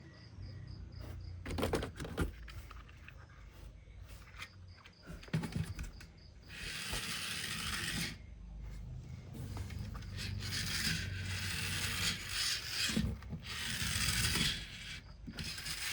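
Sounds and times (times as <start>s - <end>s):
plastic toys clicking and knocking: 1.4s - 3.3s, 4.1s - 8.2s, 9.6s - 15.9s.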